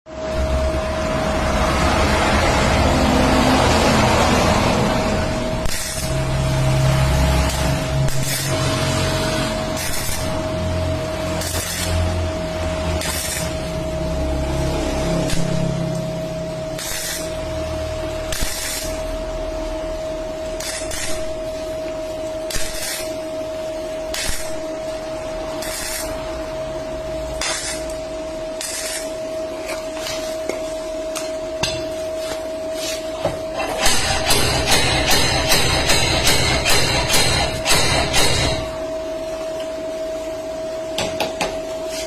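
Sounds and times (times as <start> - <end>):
machine whine: 0.1 - 42.0.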